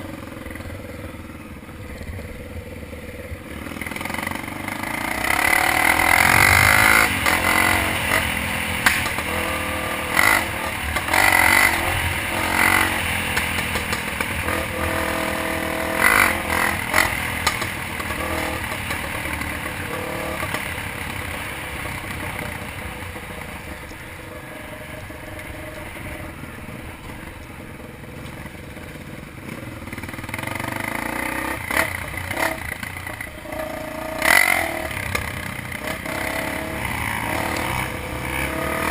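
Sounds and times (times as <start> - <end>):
dirt bike engine revving: 1.9 - 27.2, 29.4 - 38.9.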